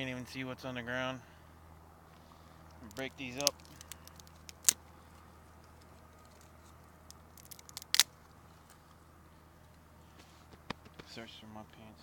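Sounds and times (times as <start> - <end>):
faint crackles: 2.2 - 9.0
twigs snapping: 2.7 - 4.9, 5.5 - 8.4.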